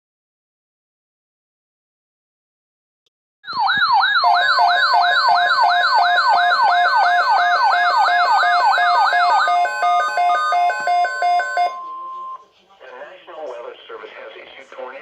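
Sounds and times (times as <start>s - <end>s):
electronic siren yelping: 3.5s - 12.4s.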